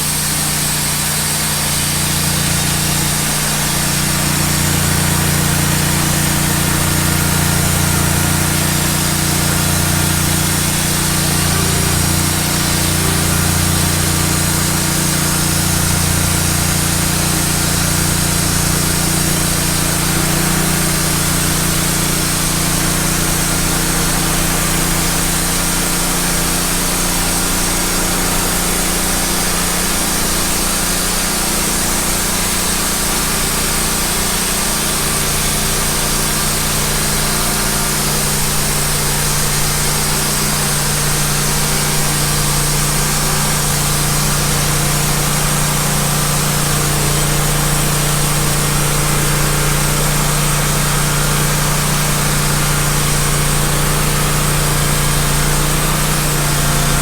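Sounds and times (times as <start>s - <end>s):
band saw cutting log: 0.0s - 57.0s
engine drone: 0.0s - 57.0s.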